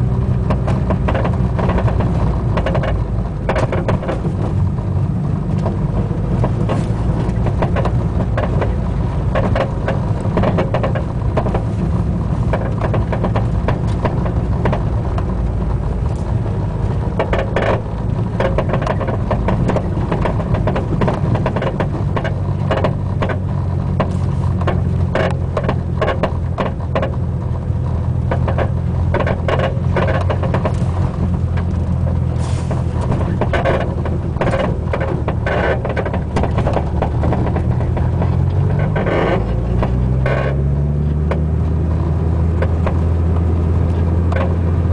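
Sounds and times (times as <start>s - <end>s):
moving car rumble: 0.0s - 44.9s
suspension creaks pops and clunks: 0.0s - 44.9s.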